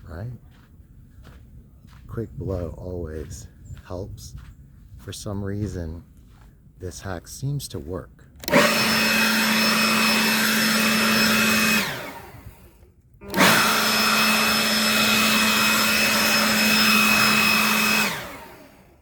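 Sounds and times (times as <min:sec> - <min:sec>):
leaf blower whining: 0:08.4 - 0:19.0.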